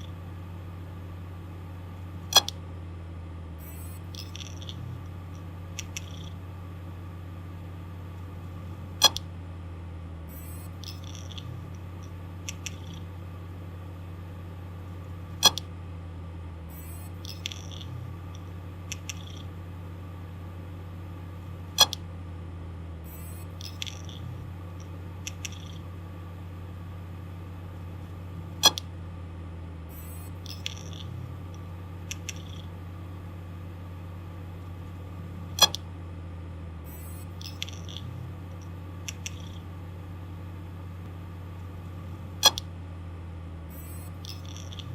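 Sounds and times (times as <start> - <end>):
hard disk spindle hum: 0.0 - 44.9
small ticks: 3.7 - 6.4, 9.0 - 9.3, 10.4 - 13.1, 15.4 - 15.7, 17.1 - 19.5, 23.5 - 25.9, 30.0 - 32.7, 36.9 - 39.7, 42.4 - 42.7, 43.8 - 44.9.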